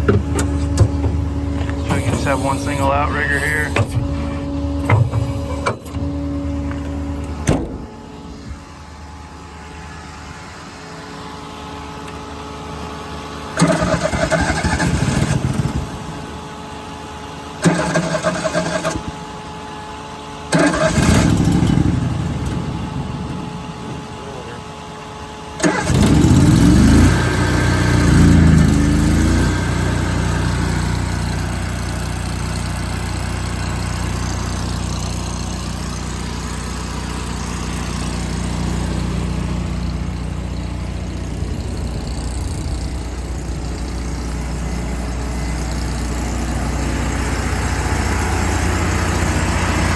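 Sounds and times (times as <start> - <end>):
steady low hum: 0.0 - 13.6, 21.4 - 25.6, 36.2 - 49.6
engine starting and running: 0.0 - 49.9
loud mechanical noise bursts: 0.0 - 49.9.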